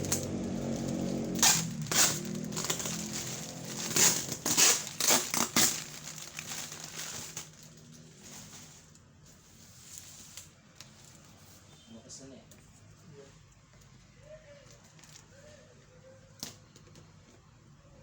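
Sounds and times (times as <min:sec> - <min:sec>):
packaging crinkling: 0:00.0 - 0:09.1.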